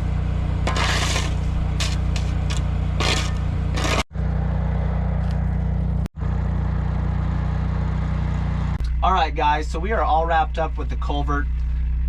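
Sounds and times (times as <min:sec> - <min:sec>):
diesel engine running: 0:00.0 - 0:12.0
bucket scraping through gravel: 0:00.6 - 0:04.1.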